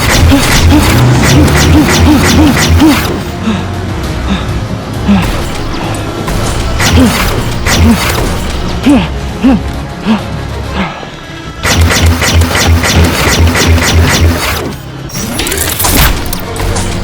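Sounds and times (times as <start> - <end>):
loud music with percussive hits: 5.2 - 8.9.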